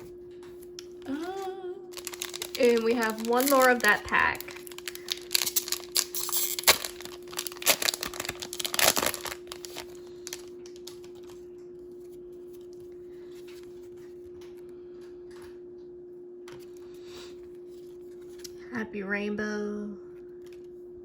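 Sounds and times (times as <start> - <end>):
steady hum: 0.0 - 21.0
wrapper being torn and crinkled: 1.9 - 11.5.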